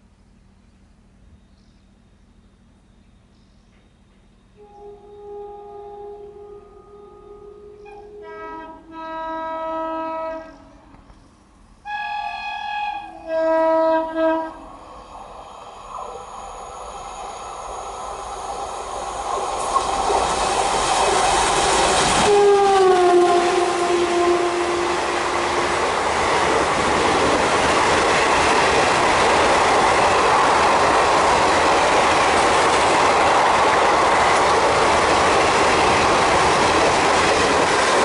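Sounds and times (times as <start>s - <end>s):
train running noise: 0.0s - 38.0s
locomotive horn honks: 4.6s - 11.0s, 11.8s - 14.8s, 22.2s - 25.8s.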